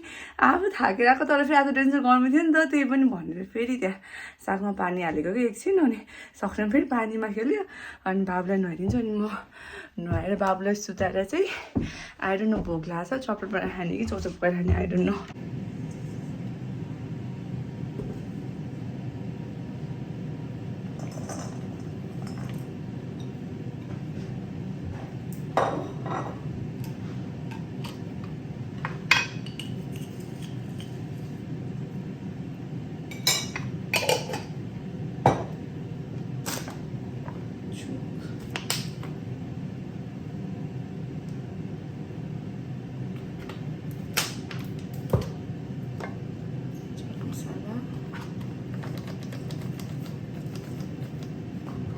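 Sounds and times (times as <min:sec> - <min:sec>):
steady background hum: 0:00.0 - 0:51.9
dishes and utensils clinking: 0:21.0 - 0:23.4, 0:28.9 - 0:31.0, 0:33.1 - 0:34.6.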